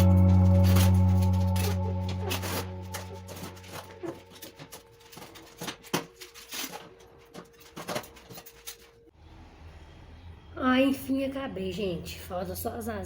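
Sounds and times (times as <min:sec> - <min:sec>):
background music: 0:00.0 - 0:06.0.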